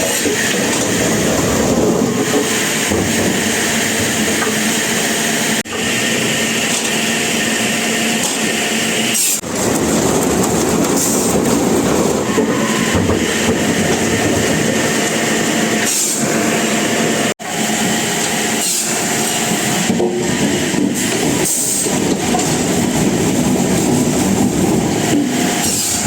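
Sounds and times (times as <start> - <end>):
sawmill machinery running: 0.0 - 26.0.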